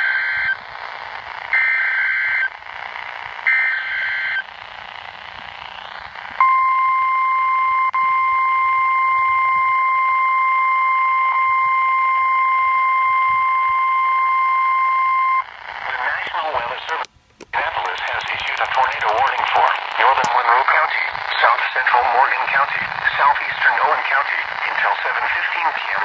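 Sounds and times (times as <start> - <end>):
radio hiss: 0.0 - 6.4, 15.4 - 26.0
steady warning alarm tone: 1.5 - 16.0
warbling data bursts: 15.5 - 25.3.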